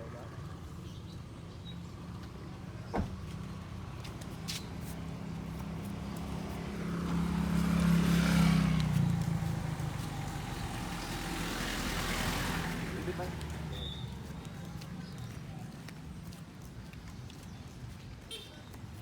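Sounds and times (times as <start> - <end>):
outdoor background noise: 0.0 - 19.0
vehicle engine passing by: 4.7 - 15.3.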